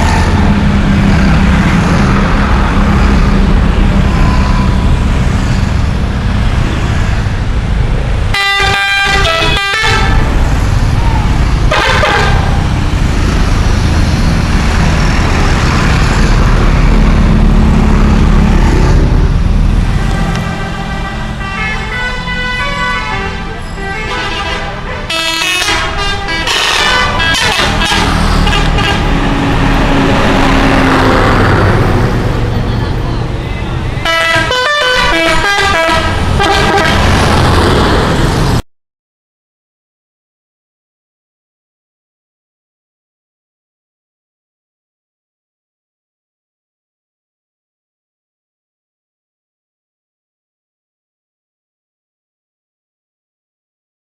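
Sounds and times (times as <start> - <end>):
bus engine rumble: 0.0 - 38.6
multi-tone musical air horn: 8.3 - 10.2, 11.7 - 12.6, 20.1 - 29.1, 34.0 - 37.1.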